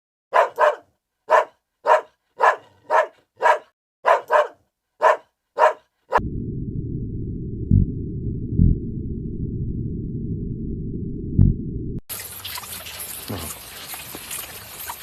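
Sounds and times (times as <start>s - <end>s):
dog barking: 0.3s - 6.2s
steady low rumble: 6.2s - 12.0s.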